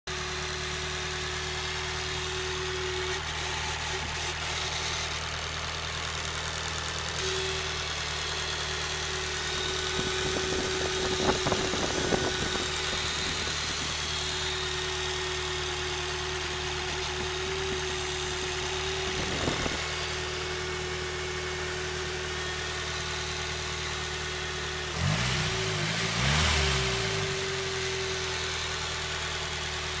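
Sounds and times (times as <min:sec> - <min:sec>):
car engine idling: 0:00.1 - 0:30.0
engine revving: 0:06.7 - 0:30.0.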